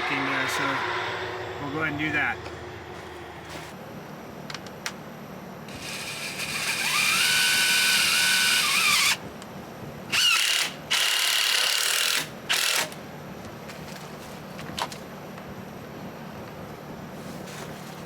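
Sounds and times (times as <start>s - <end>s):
power drill driving screws: 5.7s - 9.2s.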